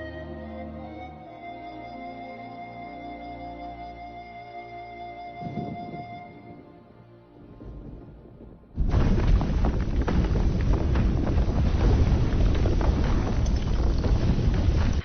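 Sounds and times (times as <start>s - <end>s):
film score music: 0.0s - 11.1s
deep rumbling roar: 7.6s - 15.0s.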